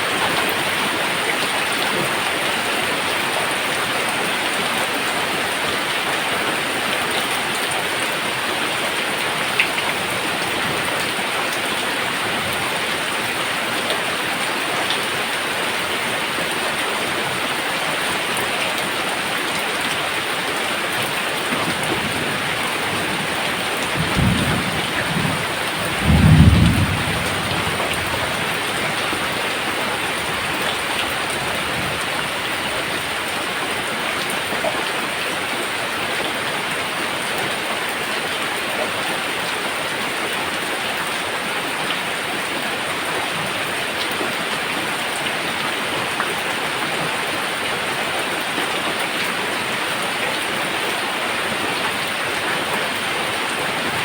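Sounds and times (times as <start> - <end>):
steady rain falling: 0.0 - 54.0
low thunder rumbles: 21.6 - 32.4.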